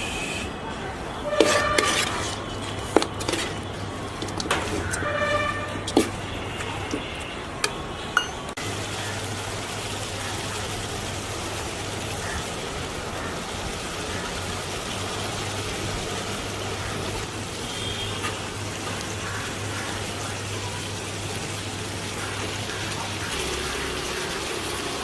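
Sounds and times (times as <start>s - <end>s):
food sizzling in a pan: 8.6s - 25.0s.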